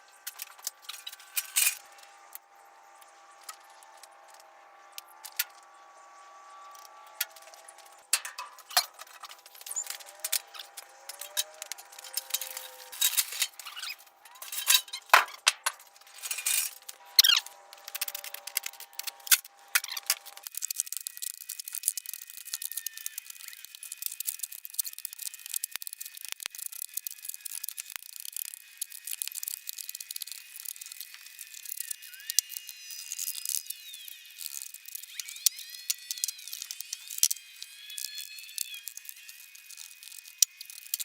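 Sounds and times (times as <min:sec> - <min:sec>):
hard objects clinking and rattling: 0:00.2 - 0:01.9, 0:07.3 - 0:20.5.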